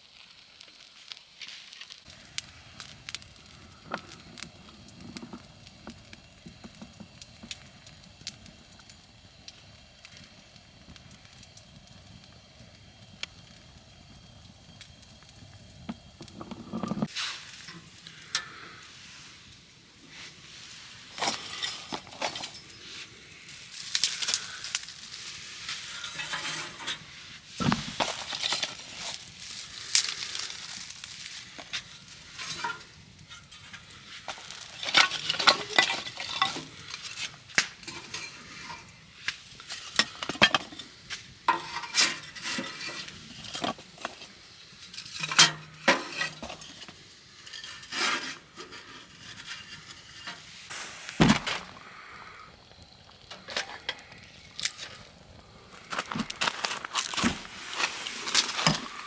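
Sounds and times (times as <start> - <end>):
cooking utensils clinking on pans: 25.9 - 27.0, 41.5 - 43.0, 45.2 - 46.8.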